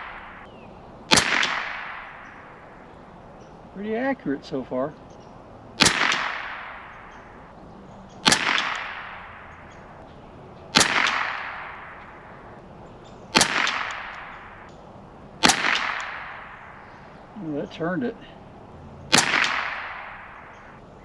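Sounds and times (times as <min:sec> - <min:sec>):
rifle shots: 0:00.0 - 0:00.5, 0:01.1 - 0:03.2, 0:05.7 - 0:17.3, 0:18.9 - 0:20.8.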